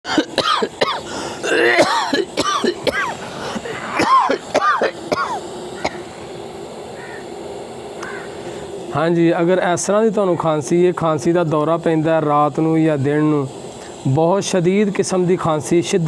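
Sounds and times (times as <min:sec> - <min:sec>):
person coughing harshly: 0:00.1 - 0:06.0.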